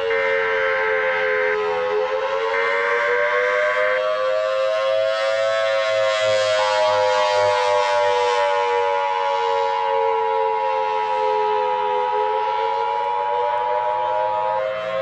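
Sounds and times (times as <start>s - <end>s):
civil defense siren wail: 0.0s - 15.0s.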